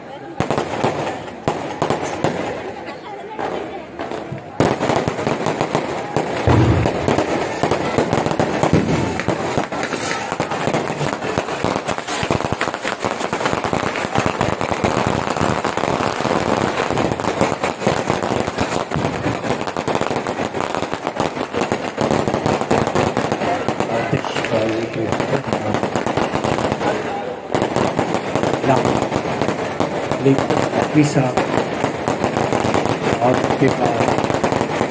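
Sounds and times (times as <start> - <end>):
fireworks crackling: 0.0 - 34.9
heavy firework boom: 6.4 - 11.4.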